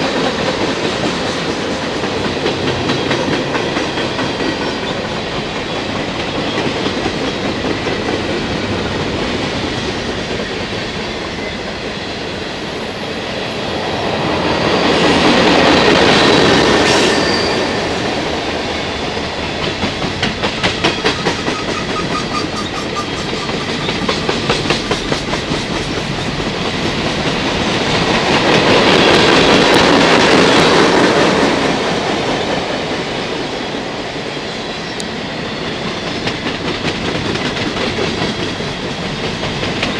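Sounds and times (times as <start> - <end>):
freight train rumbling past: 0.0 - 39.9
wheels clacking over rail joints: 19.3 - 31.8.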